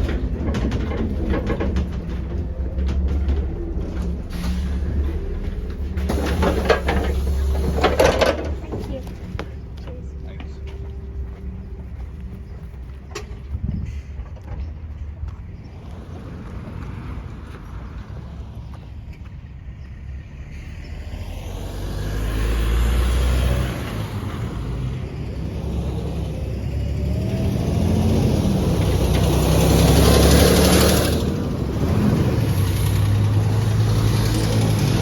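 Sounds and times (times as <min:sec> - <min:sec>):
gearbox changing up: 0:00.0 - 0:20.9
bus diesel engine pulling: 0:00.0 - 0:35.0.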